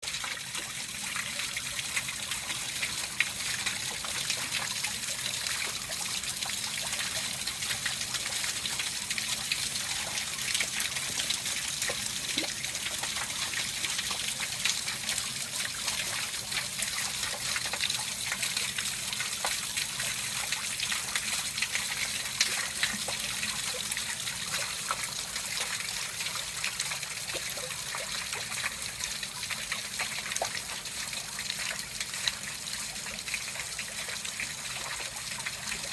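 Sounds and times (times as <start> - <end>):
small waterfall splashing into pool: 0.0 - 35.9.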